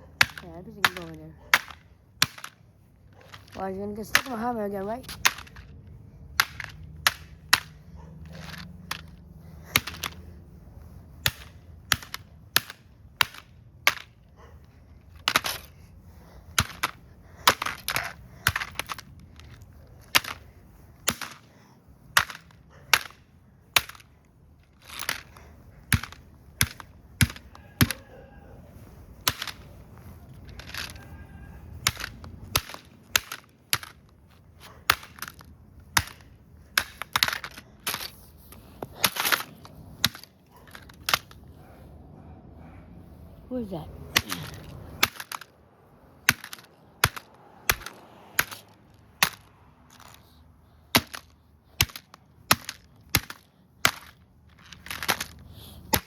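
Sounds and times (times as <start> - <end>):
hammer cracking plastic toy car: 0.2 - 2.6, 6.3 - 10.2, 11.2 - 14.2, 21.0 - 21.5, 22.2 - 24.1, 29.2 - 29.7, 31.8 - 34.1, 34.8 - 38.1, 44.2 - 45.6, 46.2 - 50.2, 50.9 - 56.0.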